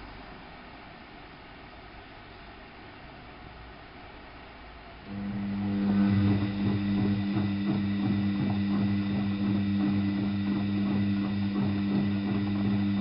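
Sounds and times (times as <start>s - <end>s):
washing machine electric hum: 0.0s - 13.0s.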